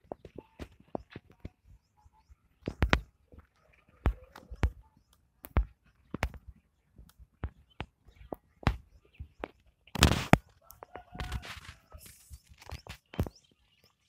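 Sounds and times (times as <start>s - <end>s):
rustling: 9.9s - 13.3s.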